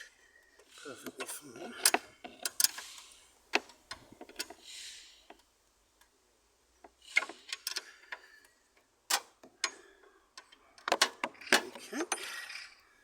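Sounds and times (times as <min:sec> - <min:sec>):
short breathy hiss: 0:04.5 - 0:05.4.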